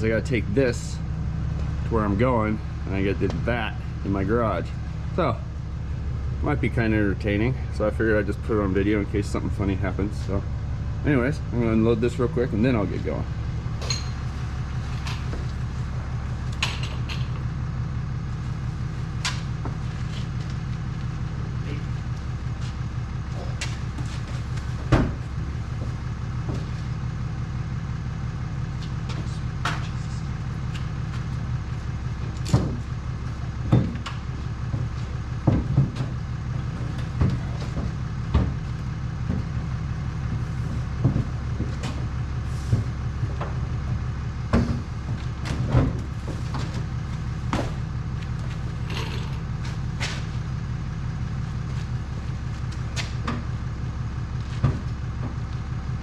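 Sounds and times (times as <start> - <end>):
truck engine idling: 0.0 - 56.0
knocks and clunks: 23.4 - 27.0, 32.1 - 50.3, 52.6 - 55.7.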